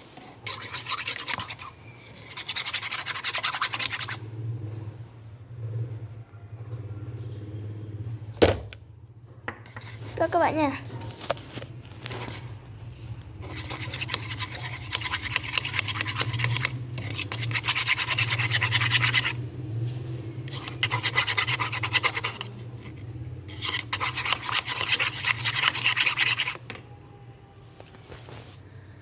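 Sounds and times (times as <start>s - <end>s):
stirrer scraping plastic tub: 0.0s - 4.4s, 13.2s - 19.5s, 20.4s - 26.8s.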